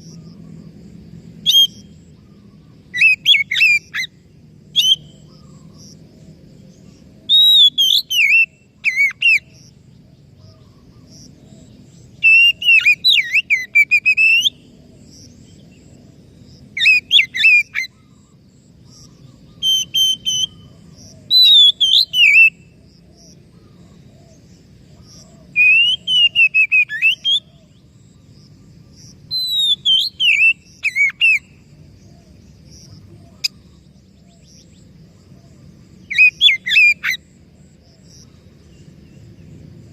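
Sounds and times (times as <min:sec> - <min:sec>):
songbird whistling and warbling: 0:01.4 - 0:05.8, 0:07.3 - 0:09.6, 0:12.2 - 0:14.7, 0:16.8 - 0:22.7, 0:25.0 - 0:27.8, 0:29.3 - 0:31.6, 0:36.0 - 0:37.2.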